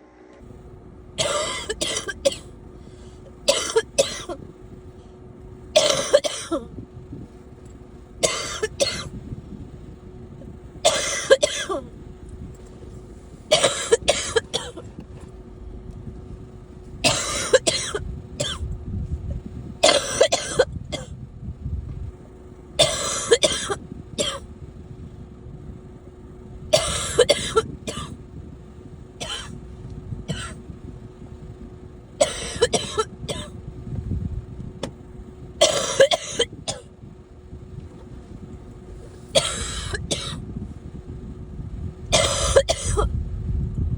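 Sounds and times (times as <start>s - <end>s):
faint steady hum: 0.0s - 43.9s
person coughing: 1.2s - 2.5s, 3.5s - 4.4s, 5.8s - 6.7s, 8.2s - 9.1s, 10.8s - 11.9s, 13.5s - 14.9s, 17.1s - 18.6s, 19.8s - 21.1s, 22.8s - 24.4s, 26.8s - 28.1s, 29.2s - 29.6s, 30.3s - 30.6s, 32.2s - 33.5s, 35.6s - 36.9s, 39.4s - 40.4s, 42.1s - 43.1s.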